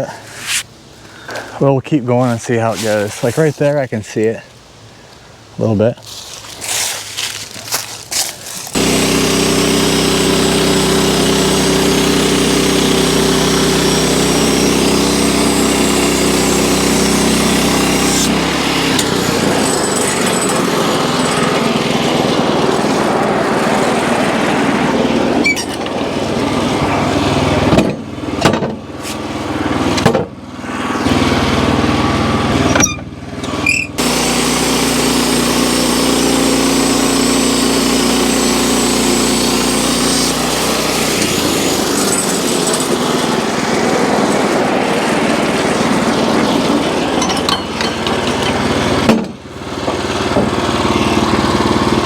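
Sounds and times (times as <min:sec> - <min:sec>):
band blade cutting log: 0:00.0 - 0:00.7, 0:08.6 - 0:25.8, 0:33.6 - 0:46.9
sawmill gas engine running: 0:08.1 - 0:52.0.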